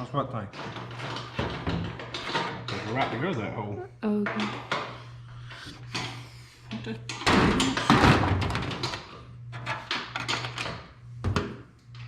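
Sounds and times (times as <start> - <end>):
knocks and clatter of work: 0.0 - 3.4, 4.2 - 12.0
steady low hum: 0.0 - 12.0
noisy rattle: 7.1 - 10.8.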